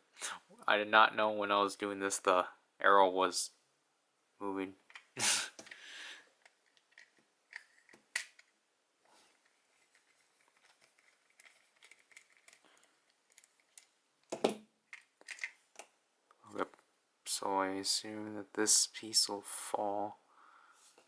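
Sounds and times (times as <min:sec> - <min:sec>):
plastic toy parts clattering: 0:06.4 - 0:08.5, 0:09.3 - 0:15.6.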